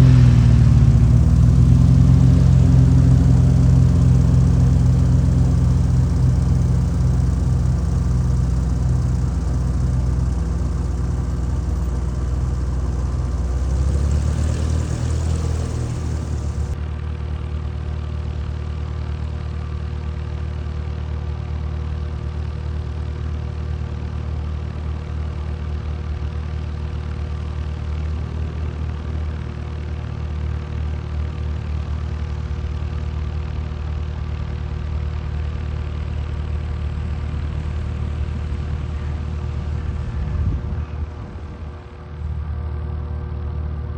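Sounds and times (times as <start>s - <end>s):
engine running steadily: 0.0s - 16.8s, 34.6s - 43.7s.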